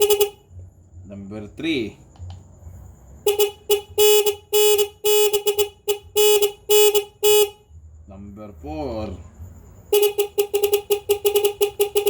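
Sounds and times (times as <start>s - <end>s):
electronic horn beeps: 0.0s - 0.5s, 3.2s - 7.6s, 9.9s - 12.0s.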